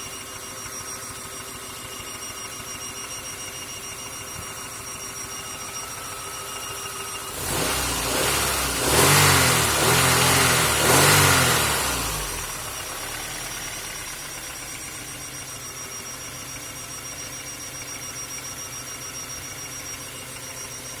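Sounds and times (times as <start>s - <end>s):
car engine revving and idling: 4.6s - 21.0s.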